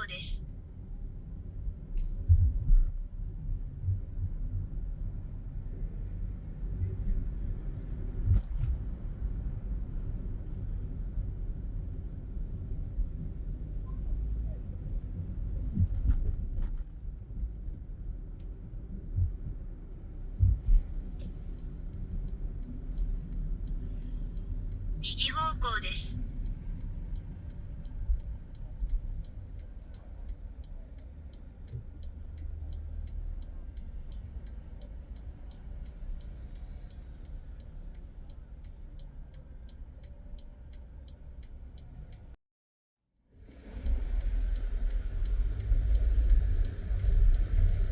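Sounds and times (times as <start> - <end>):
car rumble in motion: 0.0 - 42.4, 43.4 - 47.9
car interior rumble: 14.0 - 25.2.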